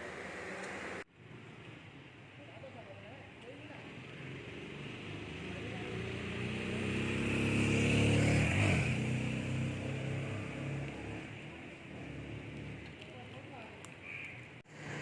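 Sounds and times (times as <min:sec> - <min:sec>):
vehicle passing by: 0:03.8 - 0:13.0.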